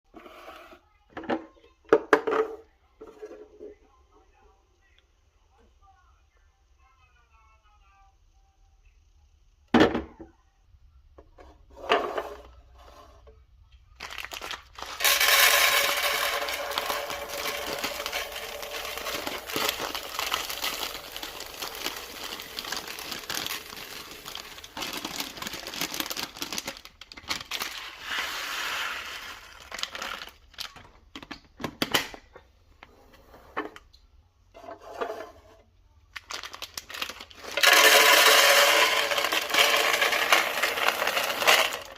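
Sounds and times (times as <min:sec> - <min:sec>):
material crinkling and rustling: 0:14.0 - 0:15.0, 0:16.7 - 0:28.1, 0:36.1 - 0:37.6.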